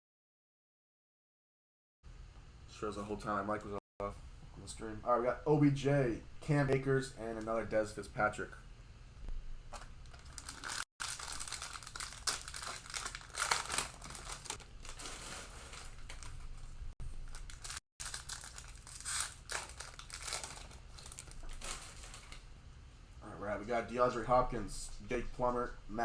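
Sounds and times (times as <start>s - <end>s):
cellophane wrapper crinkling and tearing: 9.7s - 22.5s.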